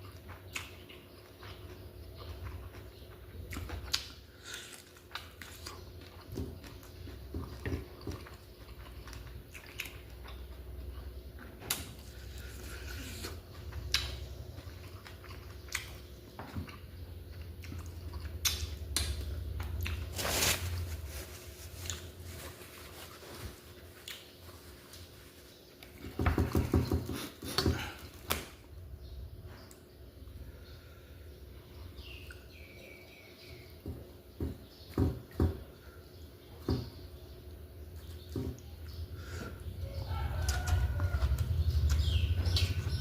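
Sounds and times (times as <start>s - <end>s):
mouth clicks and smacks: 0.0s - 6.8s, 13.2s - 20.0s
person chewing and biting: 7.5s - 20.2s.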